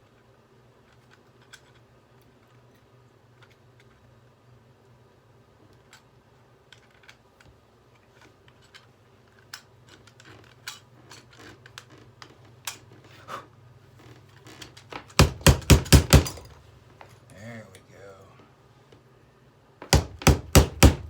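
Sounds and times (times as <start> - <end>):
faint low hum: 0.0 - 21.0
loud knocks: 15.2 - 16.5, 19.9 - 21.0.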